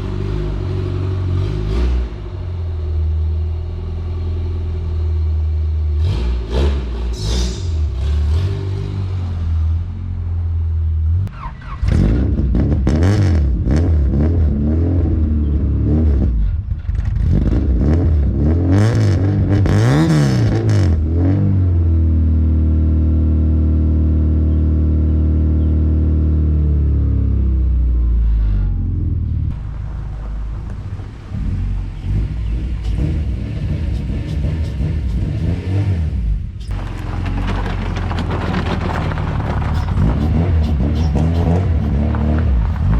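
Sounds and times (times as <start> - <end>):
car engine revving: 0.0 - 3.0, 5.9 - 10.4, 11.1 - 22.3, 25.6 - 42.9
exhaust pops: 36.6 - 42.9.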